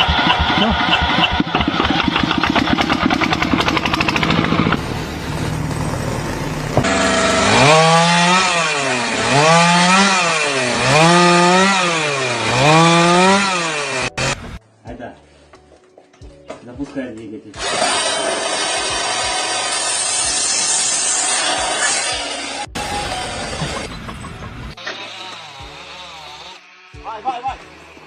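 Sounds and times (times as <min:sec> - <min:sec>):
fast mechanical pulsing: 0:00.0 - 0:07.4
engine revving: 0:00.0 - 0:14.6.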